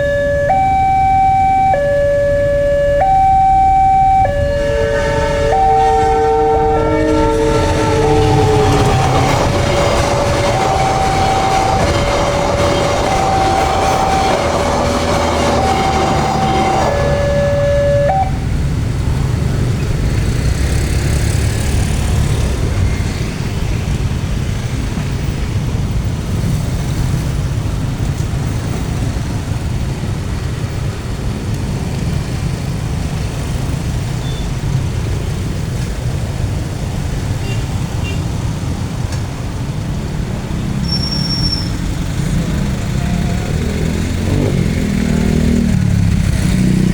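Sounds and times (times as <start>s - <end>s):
level crossing two-tone alarm: 0.0s - 18.4s
traffic rumble: 0.0s - 46.9s.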